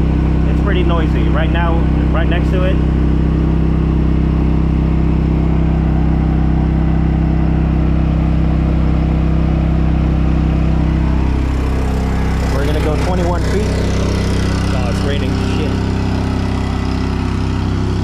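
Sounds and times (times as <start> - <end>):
generator engine droning: 0.0 - 18.0.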